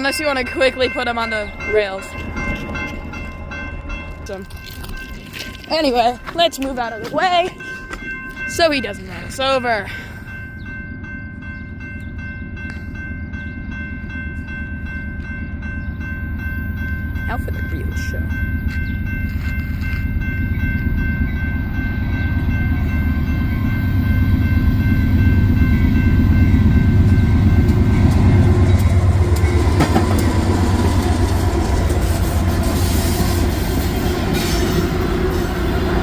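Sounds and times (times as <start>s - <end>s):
diesel locomotive engine rumble: 0.0s - 36.0s
train wheels clattering on rails: 25.5s - 36.0s.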